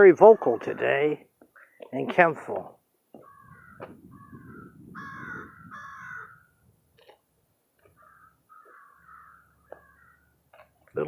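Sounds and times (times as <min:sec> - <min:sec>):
crows cawing: 0:03.2 - 0:06.6, 0:07.8 - 0:10.4
wind rumble on microphone: 0:03.2 - 0:06.9.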